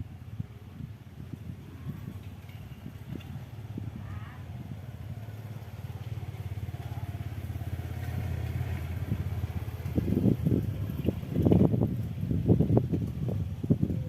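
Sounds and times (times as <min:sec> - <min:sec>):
motorcycle engine rumbling: 0:00.0 - 0:14.0.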